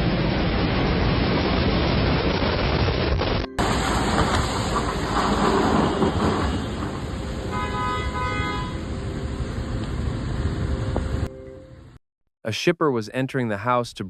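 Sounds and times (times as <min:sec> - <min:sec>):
steady rumbling noise: 0:00.0 - 0:11.3
horn sounding: 0:06.2 - 0:09.0.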